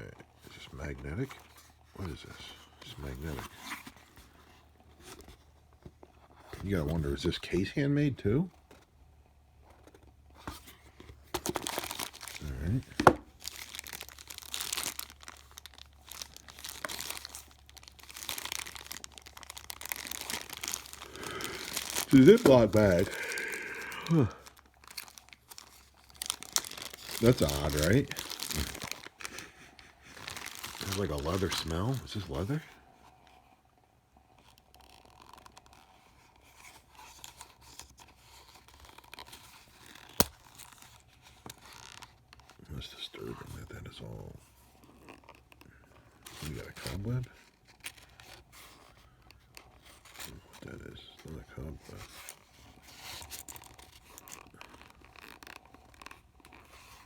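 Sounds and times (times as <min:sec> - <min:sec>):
plastic bag crinkling: 0:11.2 - 0:32.6, 0:44.8 - 0:57.0.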